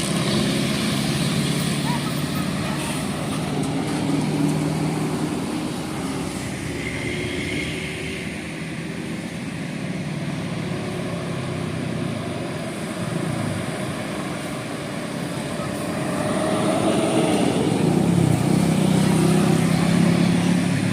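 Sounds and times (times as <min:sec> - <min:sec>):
bus engine running: 0:00.0 - 0:20.9.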